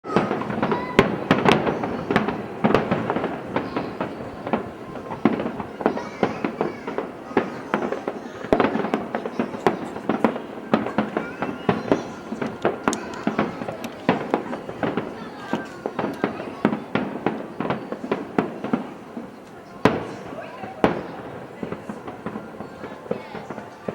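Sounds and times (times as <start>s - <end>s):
fireworks shell bursts: 0.1s - 17.8s.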